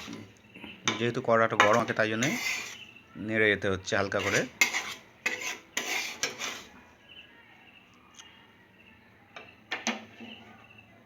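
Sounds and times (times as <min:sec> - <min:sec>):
spatula scraping in a pan: 0:00.0 - 0:01.0, 0:01.6 - 0:03.1, 0:04.0 - 0:07.0.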